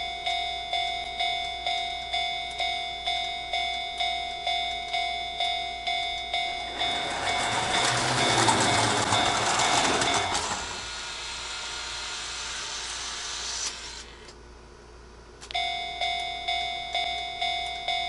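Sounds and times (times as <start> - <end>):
level crossing bell ringing: 0.0 - 10.9, 15.6 - 18.0
train rushing past: 6.6 - 14.0.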